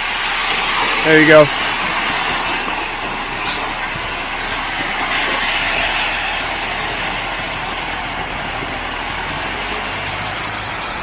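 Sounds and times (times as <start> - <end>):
concrete truck running: 0.0 - 11.0
short hiss: 3.4 - 4.8.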